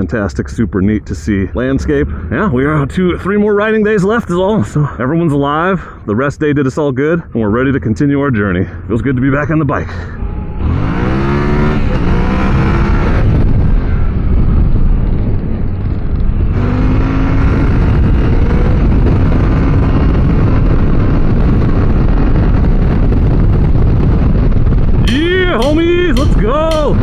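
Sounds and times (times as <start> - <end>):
wind and road noise: 0.0 - 27.0
motorcycle engine: 10.1 - 27.0.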